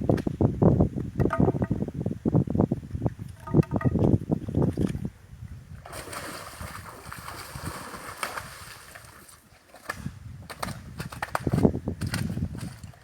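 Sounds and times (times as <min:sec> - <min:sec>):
shallow river water running: 0:04.8 - 0:13.0.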